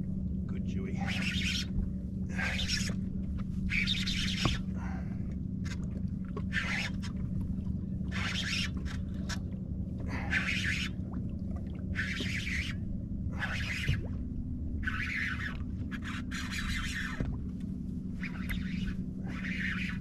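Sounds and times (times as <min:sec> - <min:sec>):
steady low hum: 0:00.0 - 0:20.0
fishing reel drag buzzing: 0:13.4 - 0:14.0, 0:14.8 - 0:17.2, 0:18.2 - 0:20.0.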